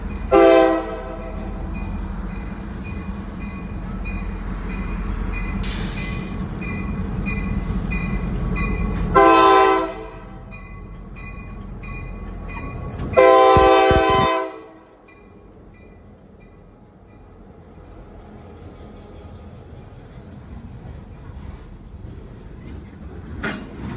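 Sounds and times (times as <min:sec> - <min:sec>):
diesel locomotive engine rumble: 0:00.0 - 0:23.9
short hiss: 0:05.6 - 0:06.4
multi-chime air horn blasts: 0:13.2 - 0:14.6.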